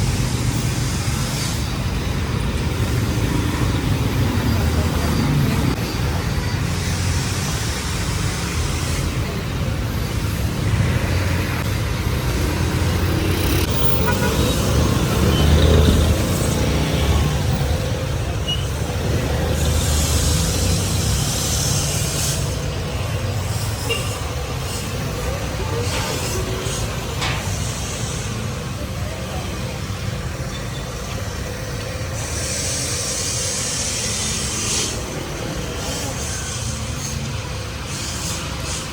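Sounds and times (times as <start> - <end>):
road traffic rumble: 0.0 - 38.9
traffic hiss: 0.0 - 38.9.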